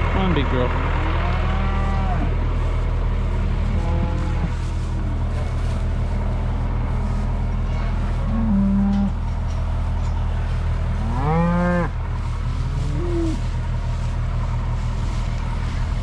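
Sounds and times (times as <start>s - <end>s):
low engine hum: 0.0s - 16.0s
cattle bawling: 3.6s - 4.6s, 8.2s - 9.2s, 10.9s - 15.0s.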